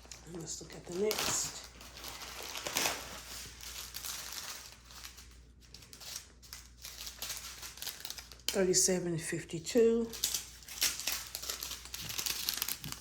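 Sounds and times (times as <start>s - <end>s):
small plastic bags crinkling: 0.0s - 9.0s, 9.7s - 13.0s.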